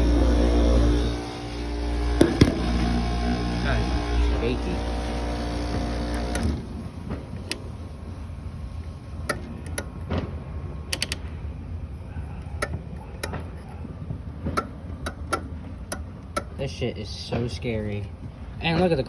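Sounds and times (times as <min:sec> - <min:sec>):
air conditioner compressor humming: 0:00.0 - 0:19.0
sharp clicks of unit handled: 0:10.9 - 0:11.4.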